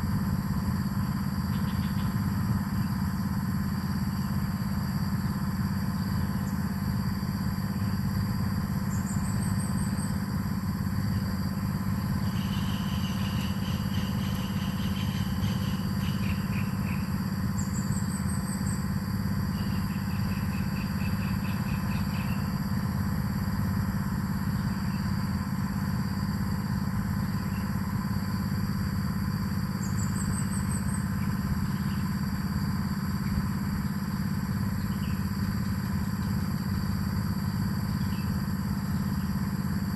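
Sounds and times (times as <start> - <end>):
low motor hum: 0.0 - 39.9
birds chirping and trilling: 12.2 - 18.0.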